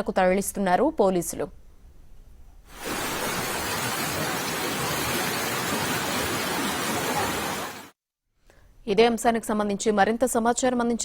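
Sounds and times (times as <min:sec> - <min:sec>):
rushing water hiss: 0:02.7 - 0:07.9.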